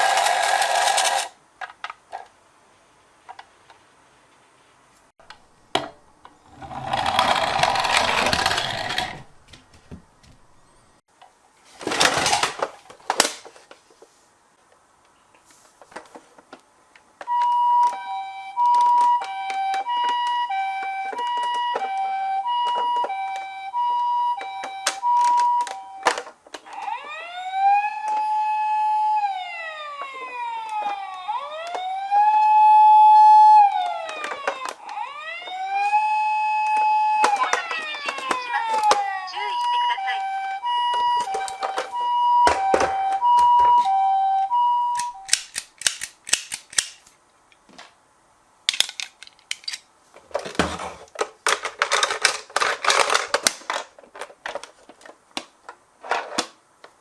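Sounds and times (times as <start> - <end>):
toy siren clicks: 17.2 - 46.9
two-tone high-low siren: 17.3 - 26.1, 26.7 - 45.3
wailing siren: 17.3 - 45.3.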